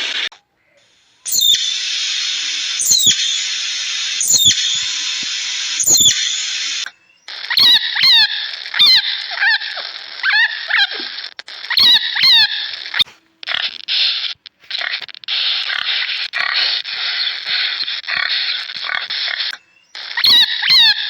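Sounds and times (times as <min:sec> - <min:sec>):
steady hiss: 0:00.0 - 0:07.6, 0:12.6 - 0:20.2
animal squeals: 0:01.3 - 0:21.0.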